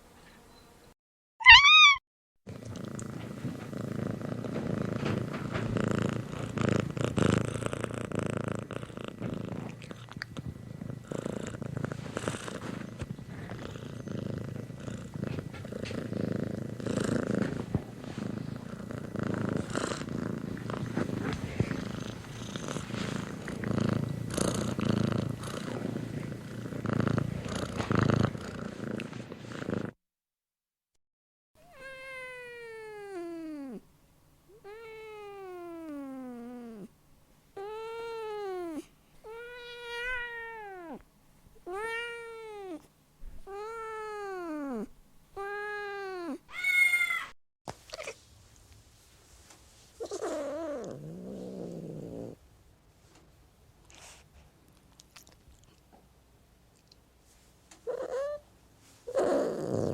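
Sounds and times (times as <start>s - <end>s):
cat meowing: 1.4s - 2.0s, 31.6s - 33.8s, 37.6s - 41.0s, 41.6s - 42.8s, 45.4s - 47.4s
cat purring: 2.5s - 30.0s, 32.6s - 33.9s, 34.5s - 46.4s, 50.0s - 52.4s, 56.7s - 59.9s.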